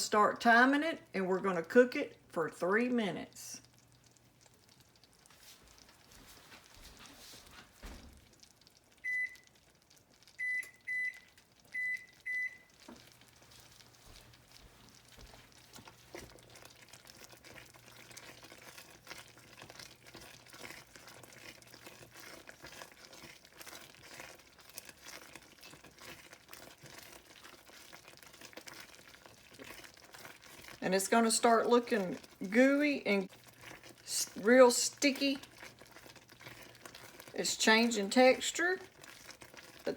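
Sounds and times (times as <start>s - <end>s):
saucepan boiling faintly: 0.0s - 39.9s
kitchen timer beeps: 9.0s - 9.5s, 10.4s - 12.7s.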